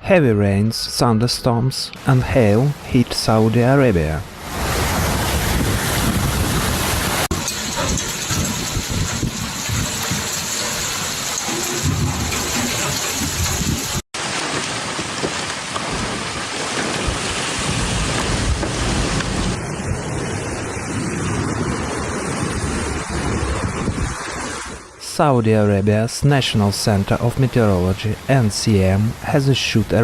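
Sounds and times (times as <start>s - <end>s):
heavy rain pouring: 2.0s - 24.8s
thunder rumbling: 4.1s - 24.1s.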